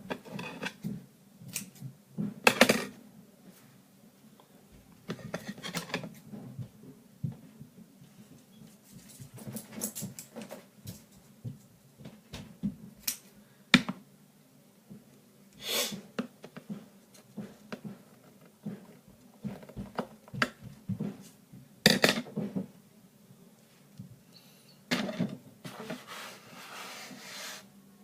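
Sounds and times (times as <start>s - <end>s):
short hiss: 15.6s - 16.0s.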